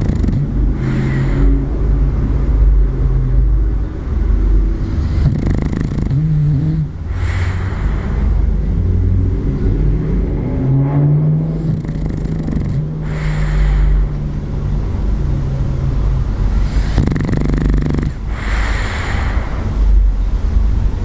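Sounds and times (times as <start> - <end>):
dog snoring: 0.0 - 1.6, 4.4 - 9.1, 10.6 - 14.2, 16.6 - 20.0.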